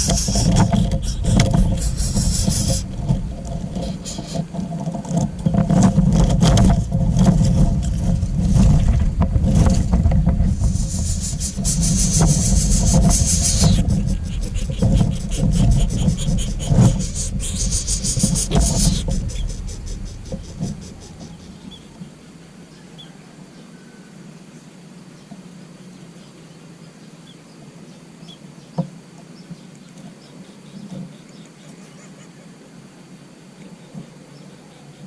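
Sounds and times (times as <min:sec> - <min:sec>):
high insect buzzing: 0:00.0 - 0:04.5, 0:10.6 - 0:21.9
rustling and scraping clicks: 0:00.0 - 0:22.1
steady low rumble: 0:00.0 - 0:22.7.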